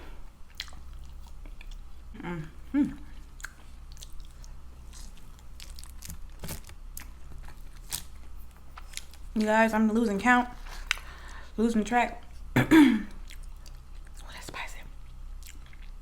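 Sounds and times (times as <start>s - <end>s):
chewing mouth sounds: 0.5s - 2.0s, 3.0s - 6.0s, 13.1s - 16.0s.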